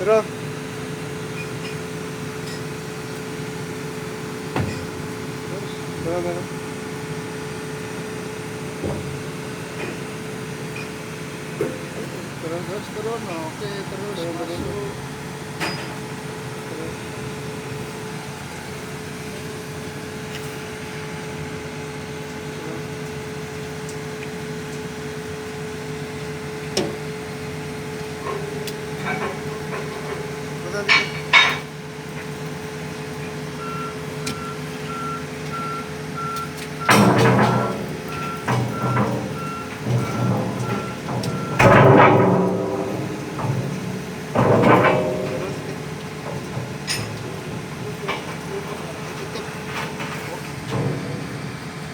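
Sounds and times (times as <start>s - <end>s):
heavy machine engine whining: 0.0s - 51.9s
reversing alarm beeping: 33.5s - 46.2s
loud clattering: 36.8s - 51.9s.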